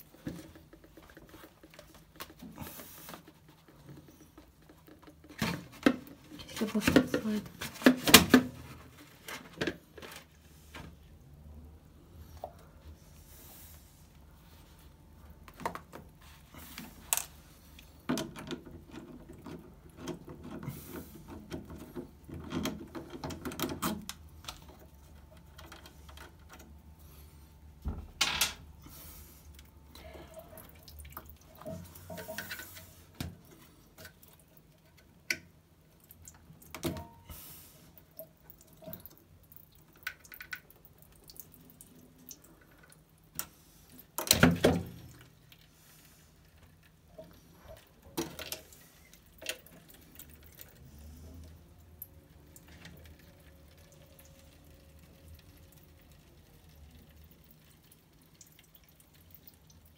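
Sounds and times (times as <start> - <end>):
water trickling into container: 46.4 - 59.9.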